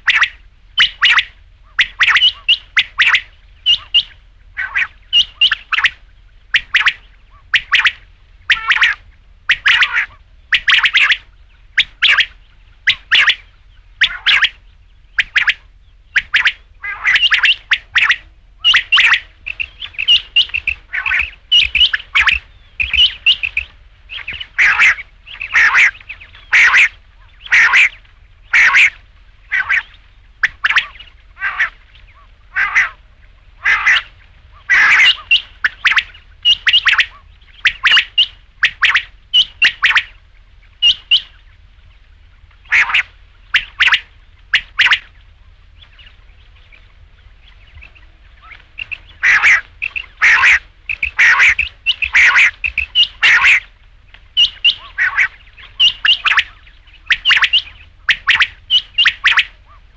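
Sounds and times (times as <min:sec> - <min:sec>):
quail calling: 0:00.0 - 0:59.9.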